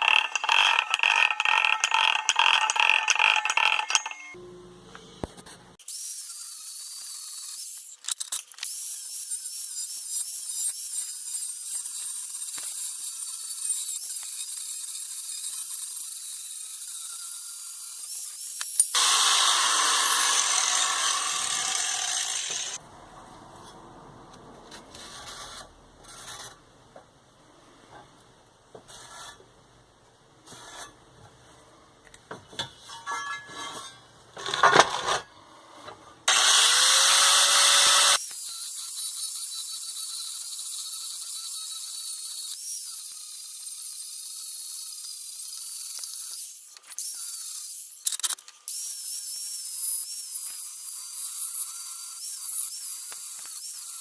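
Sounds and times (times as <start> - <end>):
power tool whining cutting metal: 9.2 - 22.8, 36.3 - 48.9.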